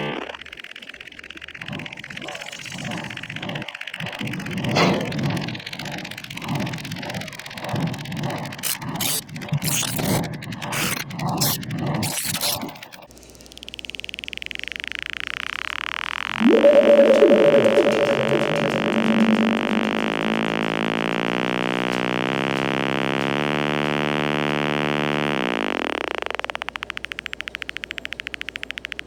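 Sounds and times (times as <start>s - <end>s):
stuttering hiss: 0.0s - 29.0s
buzzy synth tone stepping pitches: 16.2s - 26.8s.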